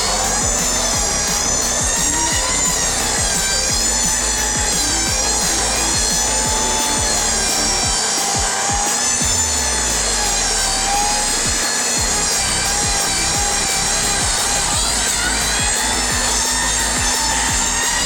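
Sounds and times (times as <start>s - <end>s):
power saw cutting wood: 0.0s - 18.0s.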